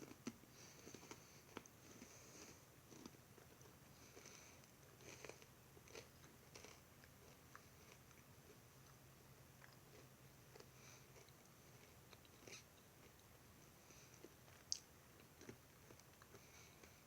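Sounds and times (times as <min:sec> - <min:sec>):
chewing and crunching: 0:00.0 - 0:17.0
low steady hum: 0:00.0 - 0:17.0.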